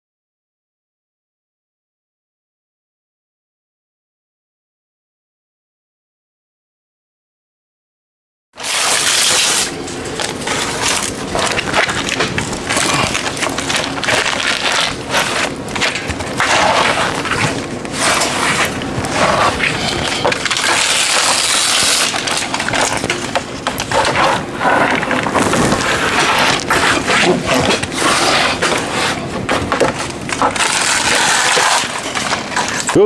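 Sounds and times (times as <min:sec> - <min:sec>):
tape peeling hiss: 0:08.6 - 0:23.0, 0:30.6 - 0:32.9
foil crackling and crinkling: 0:08.6 - 0:33.0.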